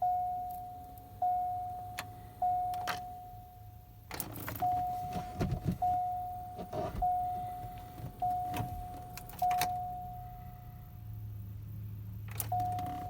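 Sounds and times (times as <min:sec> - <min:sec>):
car warning chime dinging: 0:00.0 - 0:11.0, 0:12.3 - 0:13.0
keys rattling: 0:04.1 - 0:05.9.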